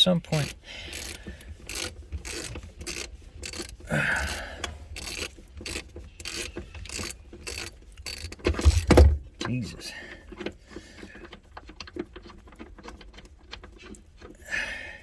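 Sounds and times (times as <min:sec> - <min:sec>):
rasping scrape: 0:00.4 - 0:08.9.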